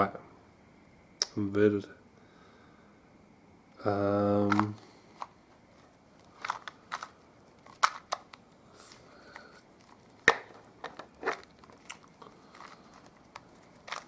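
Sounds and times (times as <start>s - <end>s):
plastic puzzle cube clacks: 4.4s - 5.3s, 6.3s - 8.4s, 9.3s - 14.0s.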